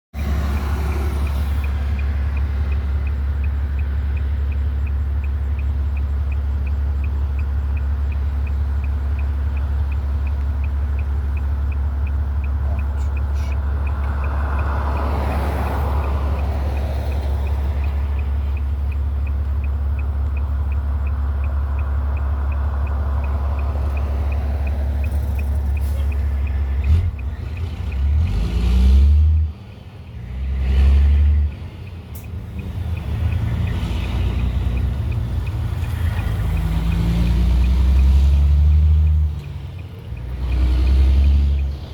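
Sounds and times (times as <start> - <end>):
engine revving: 0.2 - 4.1, 12.6 - 18.2, 21.0 - 29.6, 30.2 - 41.9
diesel engine idling: 0.2 - 28.4, 31.2 - 41.9
fast regular ticking: 1.2 - 28.0.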